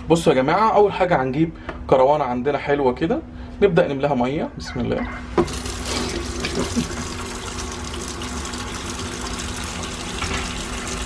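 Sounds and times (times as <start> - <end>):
tap water running into basin: 5.4 - 11.0.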